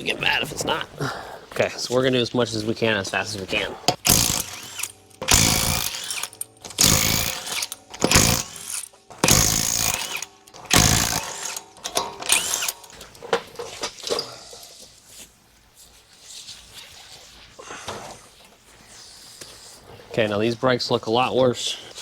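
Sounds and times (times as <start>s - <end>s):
impact wrench rattling: 3.9s - 14.2s.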